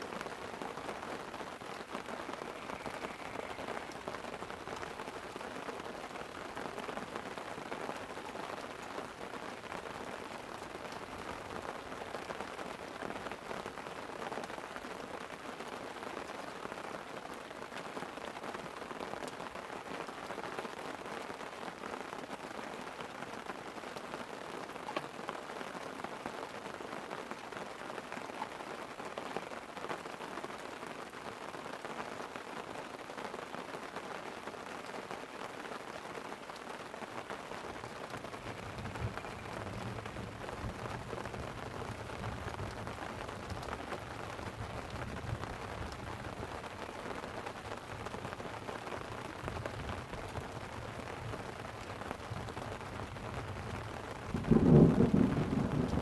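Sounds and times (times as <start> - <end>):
light rain on a tent: 0.0 - 56.0.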